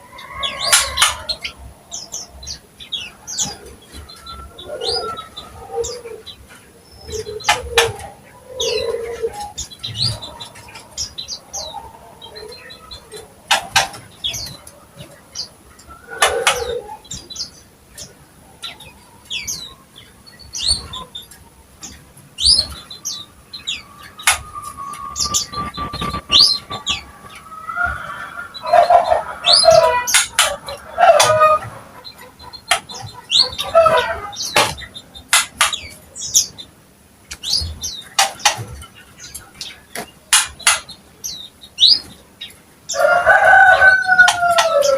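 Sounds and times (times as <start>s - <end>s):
bird chirping and whistling: 22.4s - 31.3s
sharp snaps: 24.2s - 24.5s, 34.5s - 36.0s, 39.6s - 40.9s.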